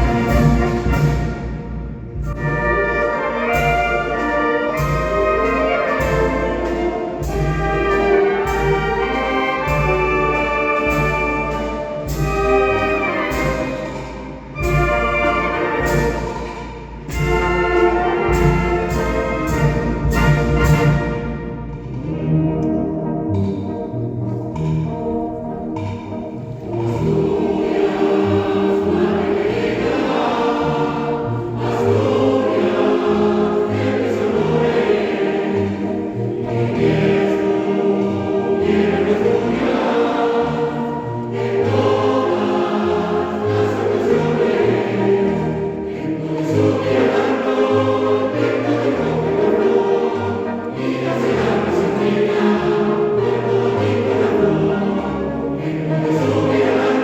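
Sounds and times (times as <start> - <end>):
choir singing a slow march: 0.0 - 57.0.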